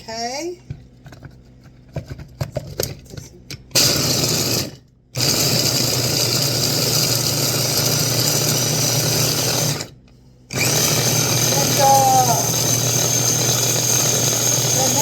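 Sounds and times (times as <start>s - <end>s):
blender motor grinding nuts: 3.7s - 15.0s.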